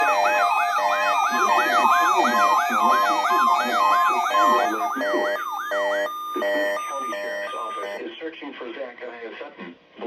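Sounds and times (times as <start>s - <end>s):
rising electronic siren sweep: 0.0s - 8.0s.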